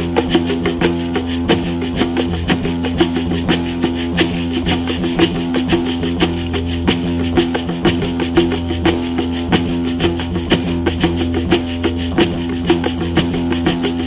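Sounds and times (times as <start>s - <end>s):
rattling percussion beat: 0.0s - 14.0s.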